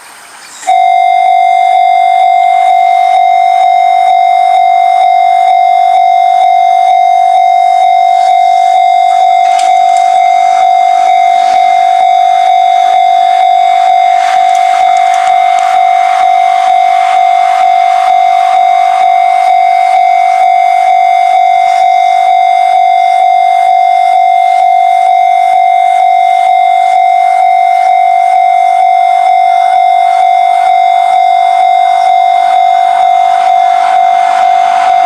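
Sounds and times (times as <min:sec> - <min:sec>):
level crossing warning bell: 0:00.6 - 0:35.0.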